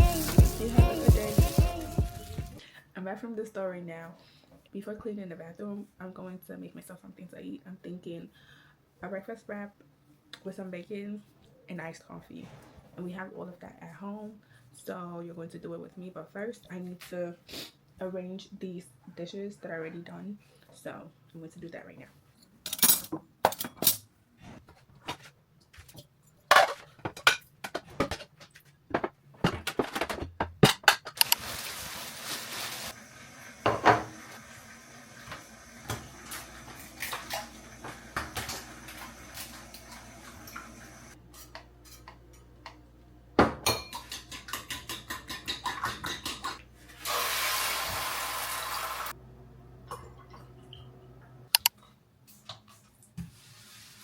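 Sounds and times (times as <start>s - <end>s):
dishes and cutlery clinking: 43.5s - 46.6s.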